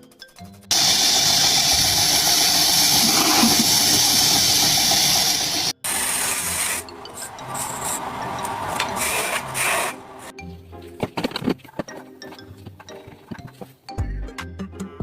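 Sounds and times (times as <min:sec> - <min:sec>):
power tool hissing: 0:00.7 - 0:08.0.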